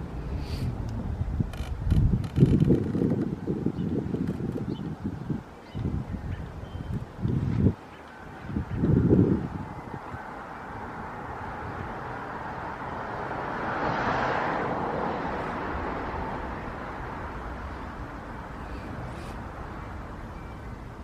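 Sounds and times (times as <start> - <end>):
wind rumble on microphone: 0.0 - 21.0
car passing by: 9.0 - 21.0.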